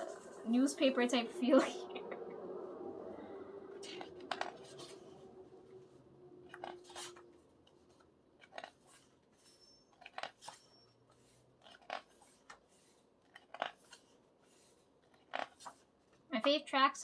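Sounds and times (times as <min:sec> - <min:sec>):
paper pages rustling: 0:03.9 - 0:05.2, 0:06.5 - 0:16.3.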